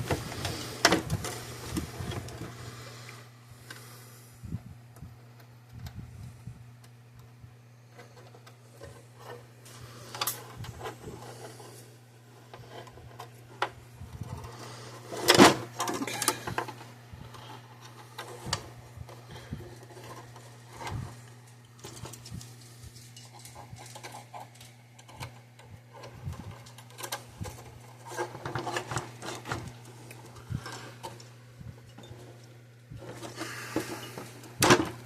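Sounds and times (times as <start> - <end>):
steady low hum: 0.0 - 35.0
clicks and small metal clatter: 19.8 - 35.0.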